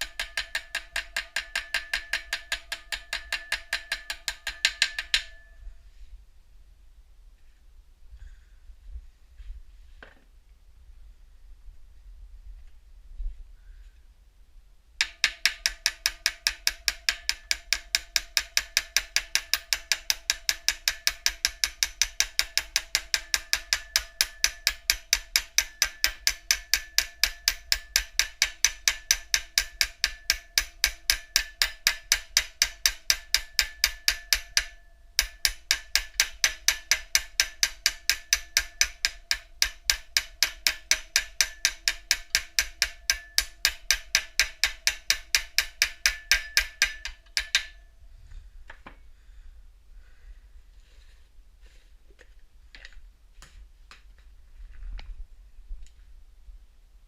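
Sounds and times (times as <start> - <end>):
hammer blows on metal: 0.0 - 5.8, 15.0 - 48.4.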